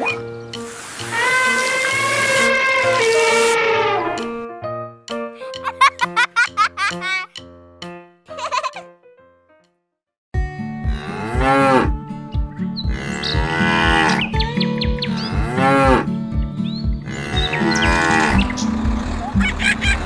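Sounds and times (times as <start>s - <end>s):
cartoon cow mooing: 1.1s - 4.5s, 17.1s - 18.4s
background music with steady beat: 10.4s - 20.0s.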